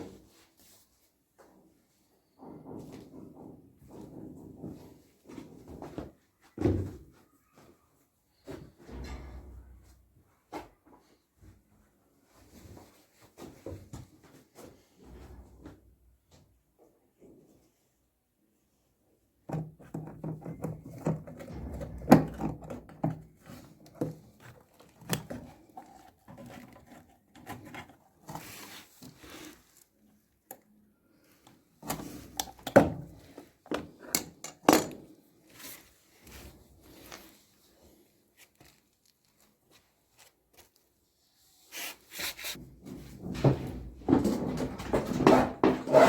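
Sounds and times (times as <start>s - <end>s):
tools knocking and scraping: 19.5s - 29.4s, 31.8s - 35.1s, 42.5s - 46.0s.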